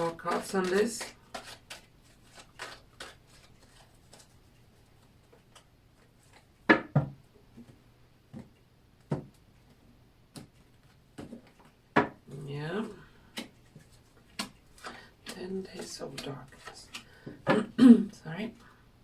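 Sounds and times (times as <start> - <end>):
cards tapping and rubbing on table: 0.0 - 4.4, 10.3 - 11.7, 13.3 - 17.4.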